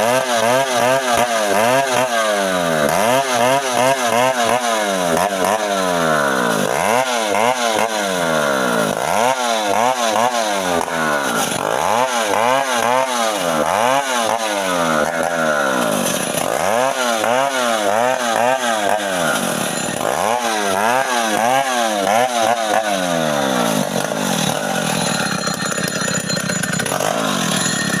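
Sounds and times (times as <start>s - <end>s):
chainsaw cutting wood: 0.0s - 28.0s.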